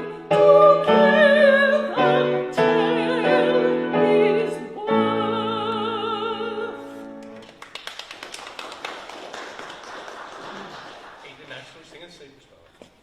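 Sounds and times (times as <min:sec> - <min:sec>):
person singing with vibrato: 0:00.0 - 0:07.2.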